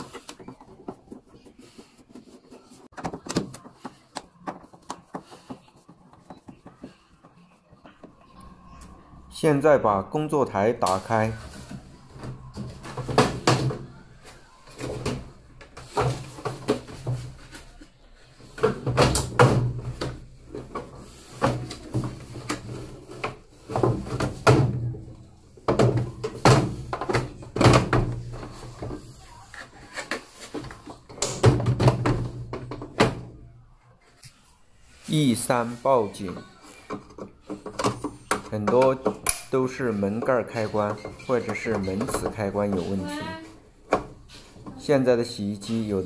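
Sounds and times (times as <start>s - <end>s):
plastic panel knocks and rattles: 30.5s - 33.3s.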